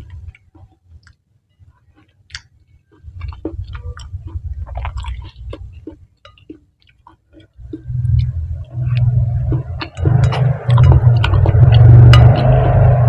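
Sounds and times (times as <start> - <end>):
wet chewing mouth smacks: 2.0 - 12.9
low rumble: 7.6 - 13.0.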